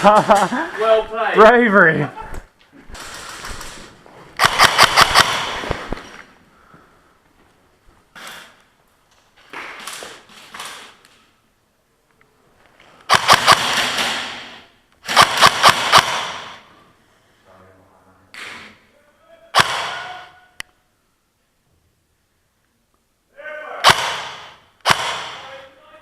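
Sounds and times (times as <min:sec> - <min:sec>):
airsoft guns firing bursts: 0:04.4 - 0:05.8, 0:13.1 - 0:16.6, 0:23.8 - 0:25.5.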